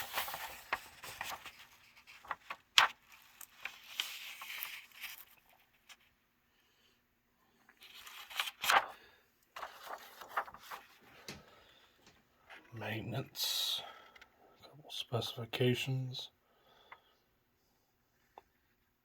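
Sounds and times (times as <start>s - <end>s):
page flips: 0.0s - 6.1s, 7.7s - 11.5s
paper pages rustling: 0.0s - 6.2s, 7.7s - 11.6s.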